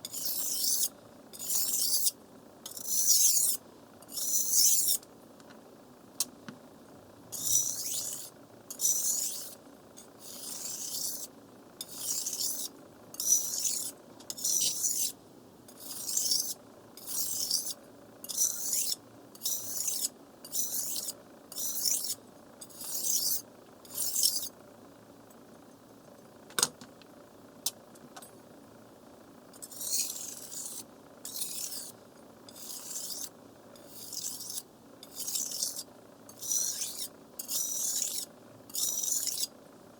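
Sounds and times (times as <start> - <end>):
knife scraping on whetstone: 0.0 - 5.0, 7.3 - 24.5, 29.6 - 39.5.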